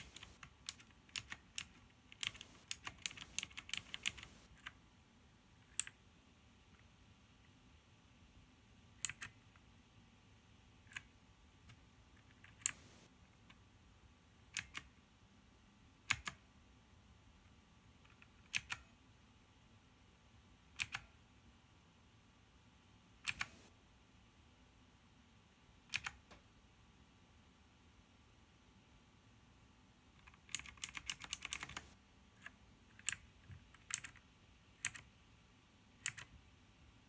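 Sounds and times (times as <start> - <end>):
mechanical keyboard key clicks: 0.0 - 4.8, 9.0 - 9.4, 14.5 - 14.9, 16.0 - 16.4, 18.1 - 18.9, 20.8 - 21.1, 23.2 - 23.7, 25.9 - 26.2, 30.2 - 34.2, 36.0 - 36.3.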